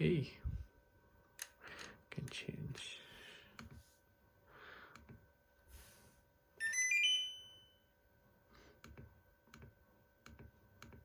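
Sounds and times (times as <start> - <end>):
electronic chime rising beeps: 6.6 - 7.8.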